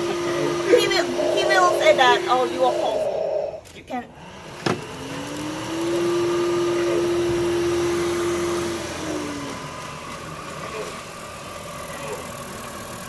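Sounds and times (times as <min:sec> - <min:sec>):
robot vacuum motor whine: 0:00.0 - 0:03.6.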